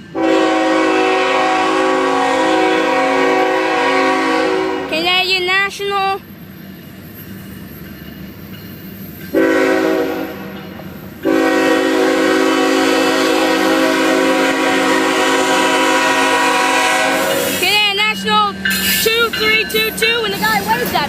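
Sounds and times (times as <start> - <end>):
low rumble of train: 0.0 - 21.0
train air horn blasts: 0.1 - 5.0, 9.3 - 17.9.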